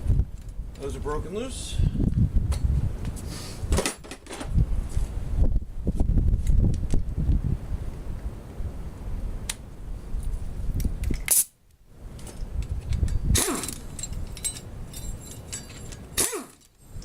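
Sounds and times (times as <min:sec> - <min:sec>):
wind rumbling on microphone: 0:00.0 - 0:17.0
metal clinks of bolts and tools: 0:12.2 - 0:17.0.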